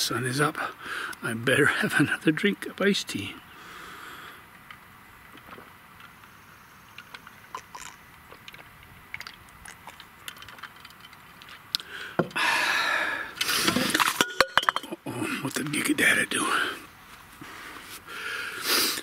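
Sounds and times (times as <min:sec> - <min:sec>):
liquid splashing: 0:07.5 - 0:10.9
glass clicks and clinks: 0:14.0 - 0:14.9.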